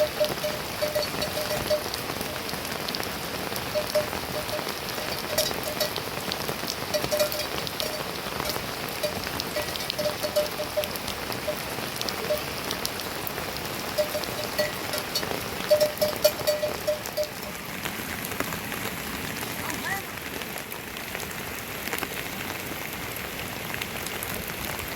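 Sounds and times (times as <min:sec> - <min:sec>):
water drips plinking: 0:00.0 - 0:19.0
heavy rain hissing: 0:00.0 - 0:24.9.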